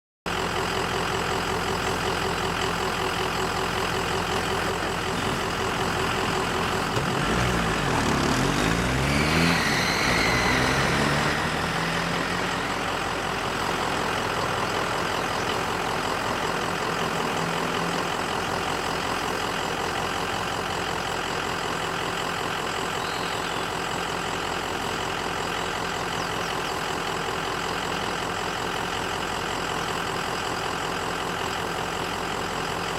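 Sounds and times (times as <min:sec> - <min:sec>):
deep engine-like drone: 0:00.6 - 0:19.4.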